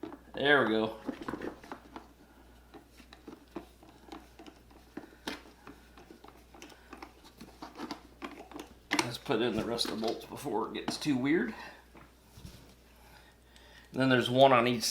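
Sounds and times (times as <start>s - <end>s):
plastic parts clicking and tapping: 0.0s - 2.1s, 2.7s - 11.1s.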